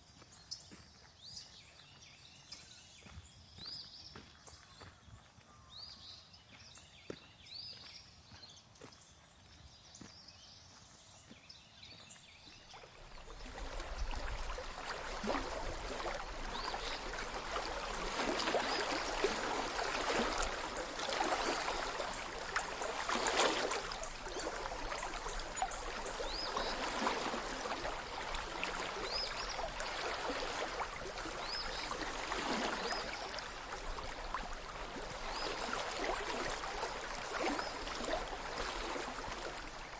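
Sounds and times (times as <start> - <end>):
creek water flowing and splashing: 0.0 - 39.9.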